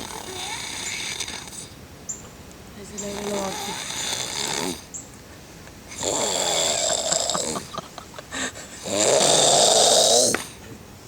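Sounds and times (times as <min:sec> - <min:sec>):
person snoring: 0:05.9 - 0:07.7, 0:08.8 - 0:10.5.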